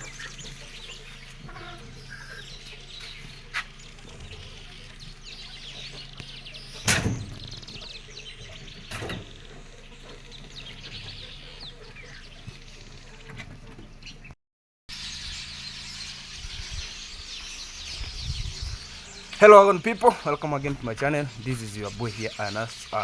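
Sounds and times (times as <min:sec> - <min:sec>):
poultry clucking: 0:00.0 - 0:07.0, 0:07.6 - 0:14.3.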